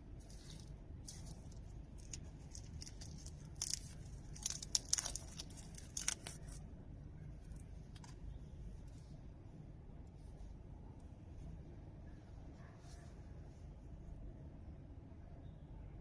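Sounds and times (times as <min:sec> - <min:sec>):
low steady hum: 0:00.0 - 0:16.0
packaging crinkles and clicks: 0:00.2 - 0:06.6.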